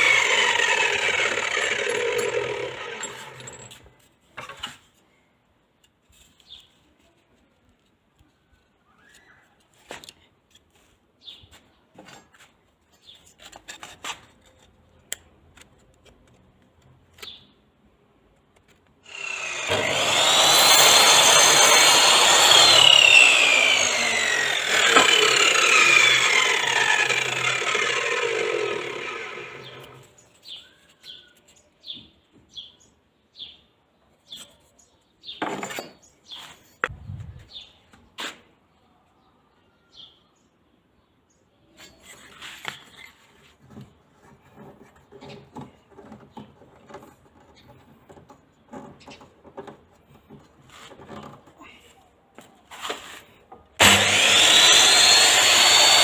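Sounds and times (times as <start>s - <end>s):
mitre saw cutting wood: 0.0s - 3.8s, 19.0s - 30.2s, 53.8s - 56.0s.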